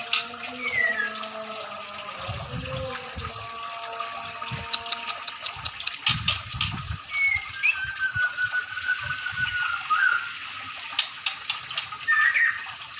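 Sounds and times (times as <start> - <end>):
songbird whistling: 0.6 - 1.1, 7.1 - 10.4, 12.0 - 12.7.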